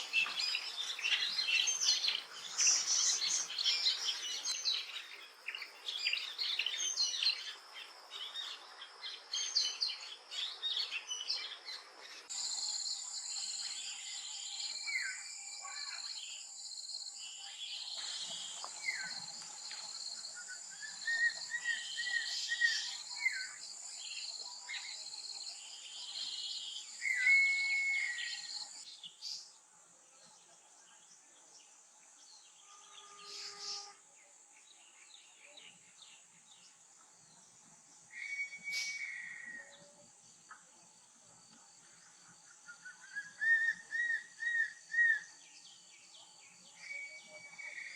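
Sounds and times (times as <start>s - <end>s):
high insect drone: 0.0s - 29.0s
birds whistling: 20.8s - 23.6s, 27.0s - 28.8s, 38.1s - 40.0s, 42.6s - 45.6s, 46.7s - 47.9s.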